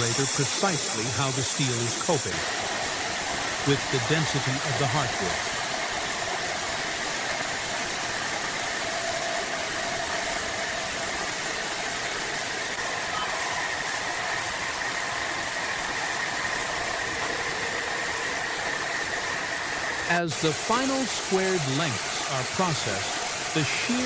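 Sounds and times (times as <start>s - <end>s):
faint high whine: 0.0s - 7.4s, 8.1s - 24.0s.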